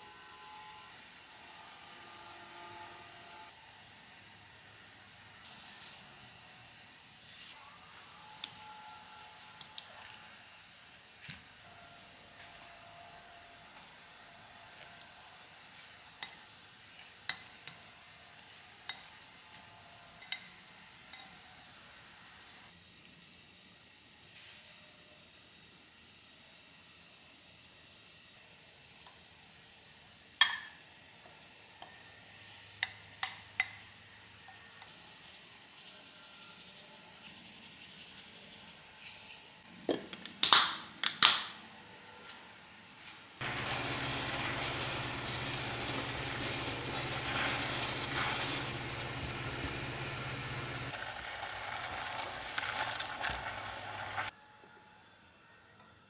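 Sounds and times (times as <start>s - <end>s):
steady running noise with hum: 43.4s - 54.3s.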